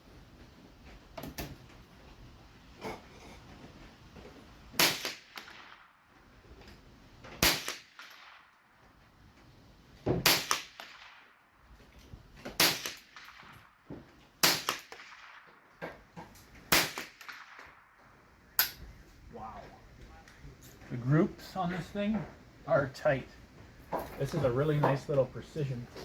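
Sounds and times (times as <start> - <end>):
rifle shots: 4.8 - 5.9, 7.4 - 8.5, 10.2 - 11.4, 12.5 - 13.8, 14.4 - 15.6, 16.7 - 17.9.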